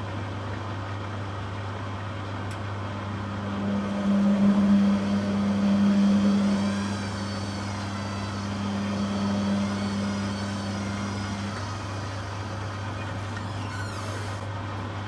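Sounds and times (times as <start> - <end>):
washing machine motor hum: 0.0 - 15.0
low drone: 2.5 - 14.5.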